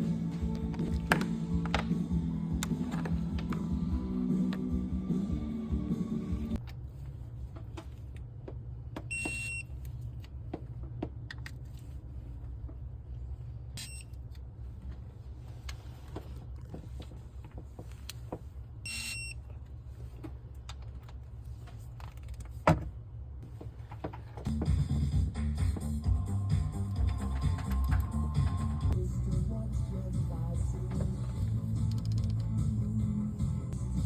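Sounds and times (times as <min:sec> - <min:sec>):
short electronic beeps: 0:18.9 - 0:19.4
engine rumbling and ticking: 0:24.4 - 0:34.0.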